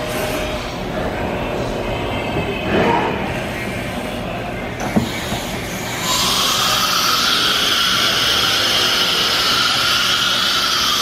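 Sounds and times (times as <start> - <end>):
cnc router whining hiss: 4.8 - 11.0.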